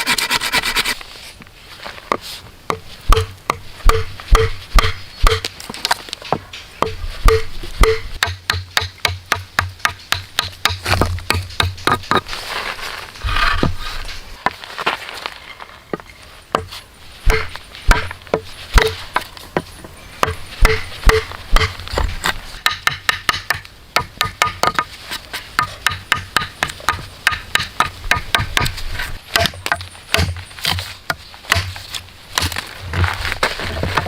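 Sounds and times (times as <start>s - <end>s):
tools striking wood: 2.7s - 12.3s, 16.5s - 24.9s, 25.6s - 31.8s.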